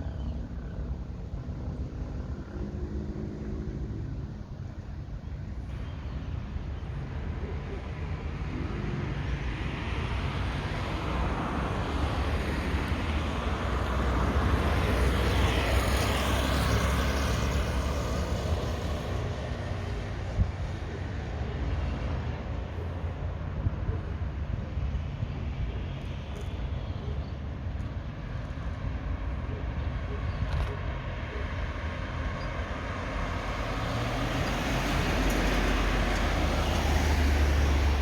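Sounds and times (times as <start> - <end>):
vehicle passing by: 7.8 - 20.4, 31.0 - 38.0.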